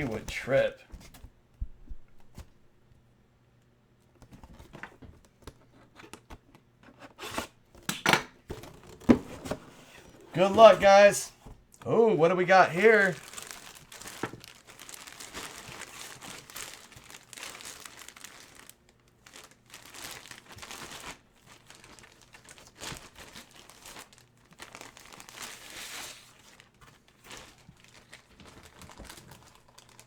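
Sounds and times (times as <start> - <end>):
plastic packaging crinkling: 10.4 - 11.2, 12.4 - 30.0.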